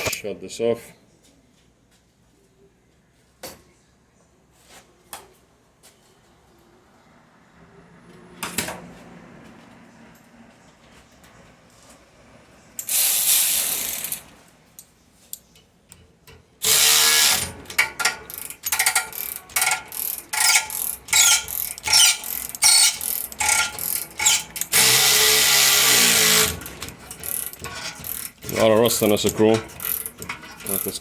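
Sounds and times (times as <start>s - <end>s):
ratchet wrench ratcheting: 12.8s - 14.2s, 16.6s - 31.0s.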